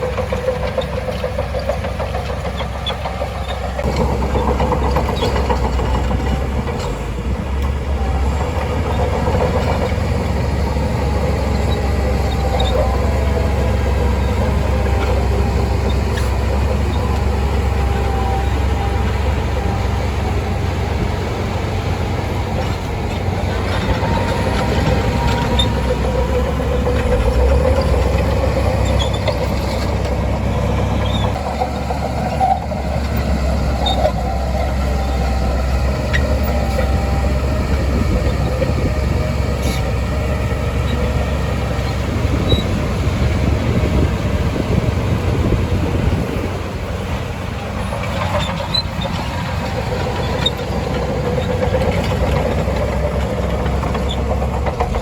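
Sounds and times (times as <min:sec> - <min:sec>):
bulldozer diesel rumble: 0:00.0 - 0:55.0
tracks and machinery rattling: 0:00.0 - 0:55.0
faint wavering squeals: 0:07.9 - 0:31.4.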